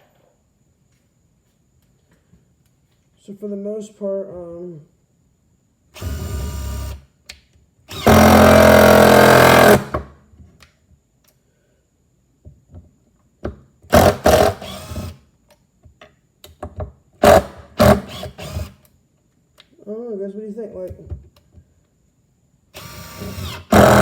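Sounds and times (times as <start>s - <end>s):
impact driver rattling: 7.9s - 10.0s, 22.8s - 24.0s.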